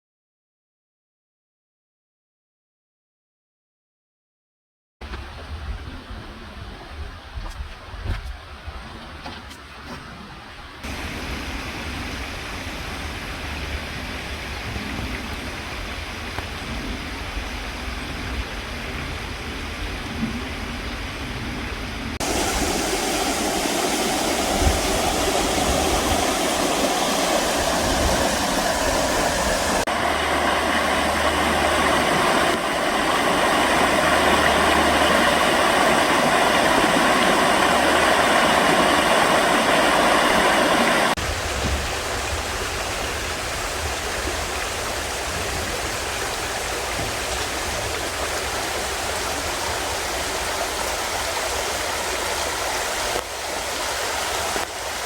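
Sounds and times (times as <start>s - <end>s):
river rushing over rocks: 10.9s - 14.4s, 22.2s - 55.0s.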